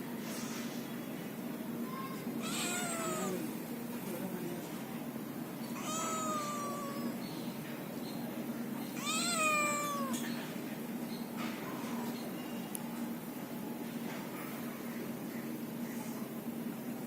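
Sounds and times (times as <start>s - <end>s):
kitten meowing: 2.4s - 3.5s, 5.8s - 7.2s, 9.0s - 10.2s.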